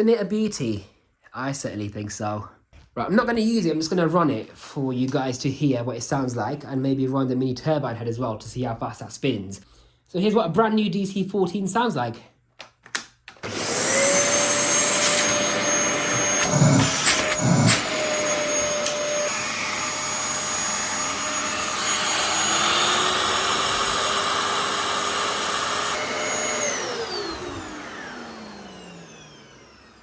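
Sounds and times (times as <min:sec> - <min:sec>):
motor winding down: 0:13.4 - 0:30.0
vacuum cleaner running: 0:13.4 - 0:30.0.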